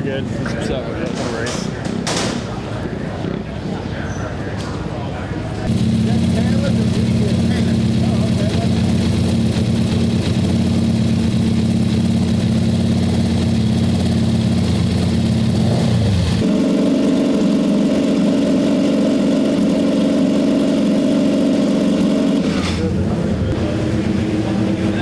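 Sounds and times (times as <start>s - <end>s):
engine running: 5.6s - 25.0s.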